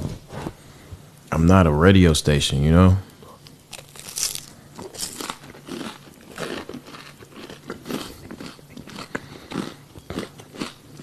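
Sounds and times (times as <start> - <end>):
person chewing crunchy food: 3.2 - 11.0.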